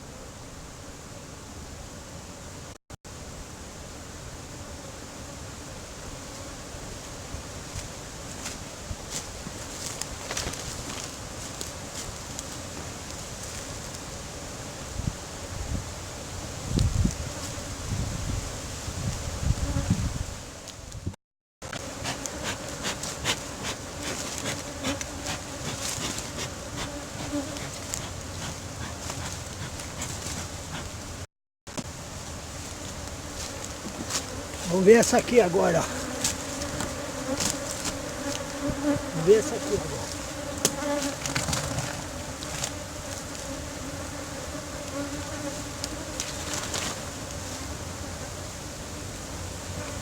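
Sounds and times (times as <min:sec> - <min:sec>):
honeybees buzzing: 0:21.7 - 0:50.0
hive clicks and knocks: 0:36.0 - 0:39.1, 0:40.4 - 0:43.6.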